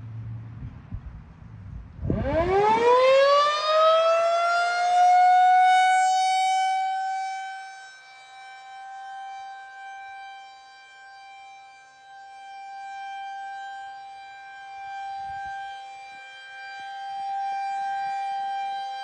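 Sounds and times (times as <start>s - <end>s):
tornado siren wailing: 1.9s - 19.0s.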